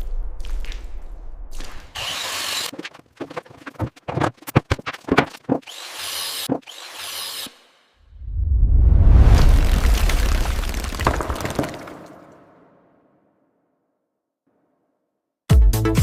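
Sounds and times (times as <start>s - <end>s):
low rumble: 0.0s - 1.9s, 8.0s - 10.9s
rough scraping: 2.6s - 5.6s
sharp knocks: 3.2s - 5.6s.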